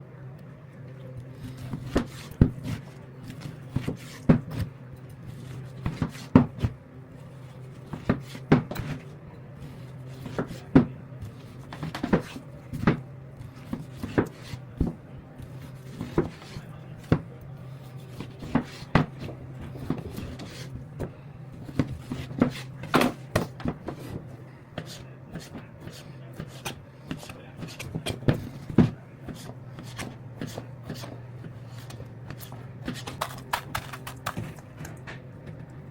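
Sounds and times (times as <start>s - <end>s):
steady low hum: 0.0s - 35.9s
knife chopping on wooden board: 1.4s - 4.7s, 7.9s - 9.0s, 9.7s - 17.3s, 18.1s - 20.7s, 21.6s - 34.6s.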